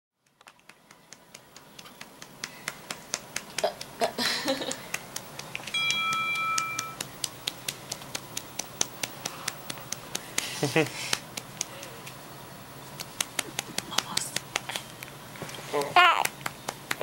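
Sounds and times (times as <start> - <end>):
steady high tone: 5.7 - 7.1.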